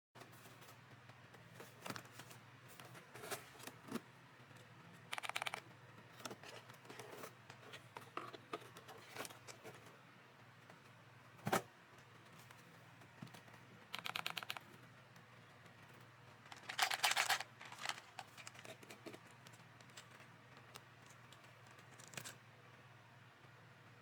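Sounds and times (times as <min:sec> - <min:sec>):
mechanical keyboard keystrokes: 0:05.1 - 0:05.6, 0:14.0 - 0:14.6.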